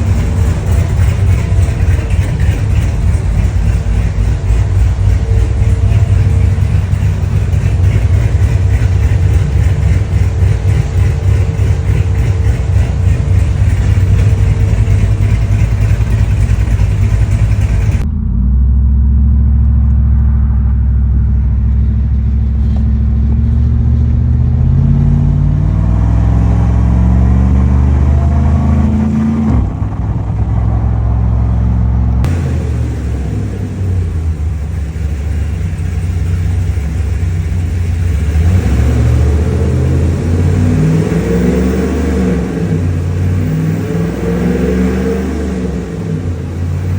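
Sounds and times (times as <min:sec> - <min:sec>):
pickup truck engine rumbling: 0:00.0 - 0:46.9.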